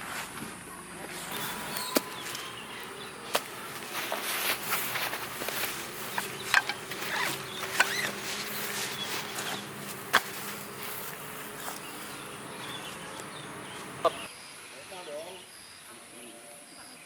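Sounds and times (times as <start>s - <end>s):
faint low hum: 1.3s - 14.3s
insects buzzing: 1.3s - 14.5s.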